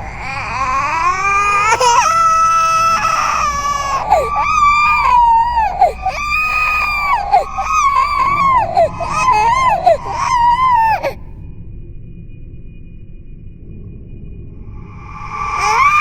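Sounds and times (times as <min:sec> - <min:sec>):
processed baby crying: 0:00.0 - 0:11.3, 0:15.5 - 0:16.0
low eerie rumble: 0:00.0 - 0:16.0.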